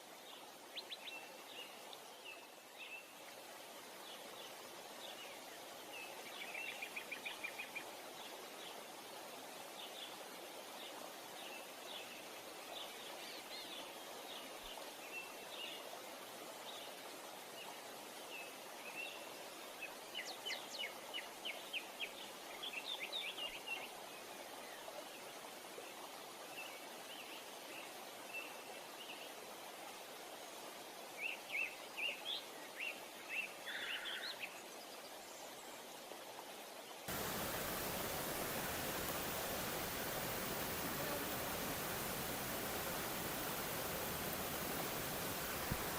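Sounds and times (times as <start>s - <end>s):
small birds chirping: 37.1s - 45.9s
waterfall rushing: 37.1s - 45.9s.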